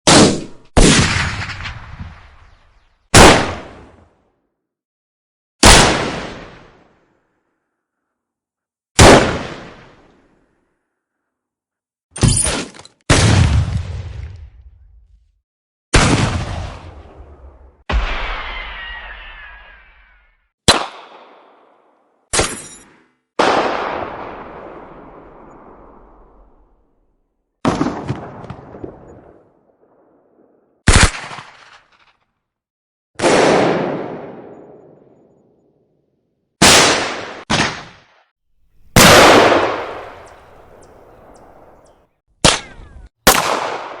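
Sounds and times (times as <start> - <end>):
gunshots: 0.1 - 2.4, 3.1 - 3.9, 5.6 - 6.9, 9.0 - 10.1, 15.9 - 17.0, 20.7 - 21.6, 30.9 - 32.0, 33.2 - 34.8, 36.6 - 38.1, 38.8 - 44.0.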